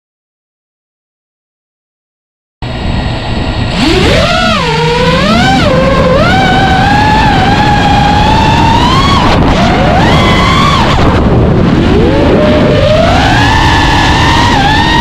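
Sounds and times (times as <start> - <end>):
drone motors whining: 2.6 - 15.0
wind rush on microphone: 2.6 - 15.0.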